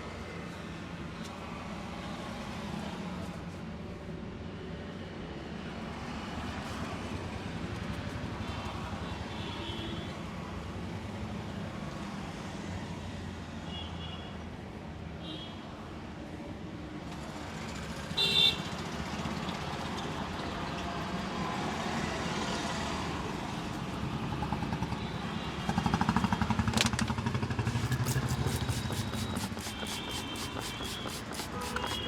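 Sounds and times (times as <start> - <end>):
street traffic: 0.0 - 32.0
fast even tapping: 27.8 - 32.0.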